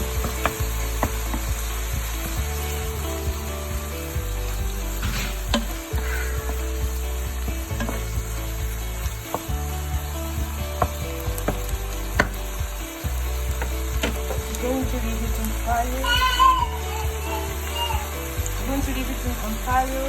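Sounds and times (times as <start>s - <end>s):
chicken sizzling in a pan: 13.8s - 20.0s.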